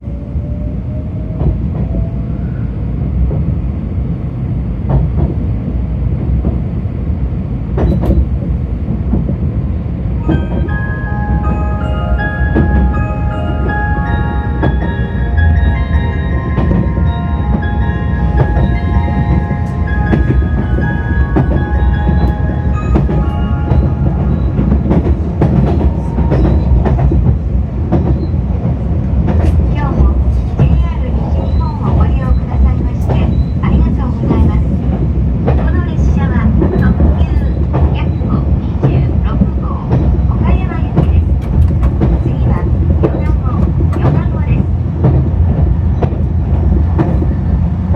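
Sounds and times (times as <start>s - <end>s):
train interior rumble: 0.0s - 47.9s
bell-like announcement chime: 10.2s - 26.7s
wheels clicking over rail joints: 13.7s - 47.9s.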